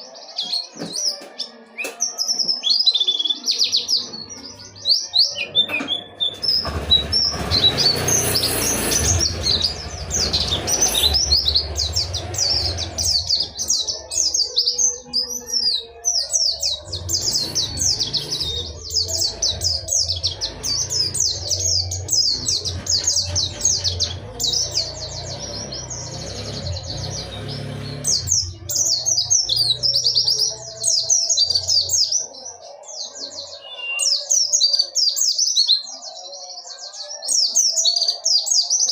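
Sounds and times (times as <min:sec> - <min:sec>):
bird singing rapid high chirps: 0:00.0 - 0:38.9.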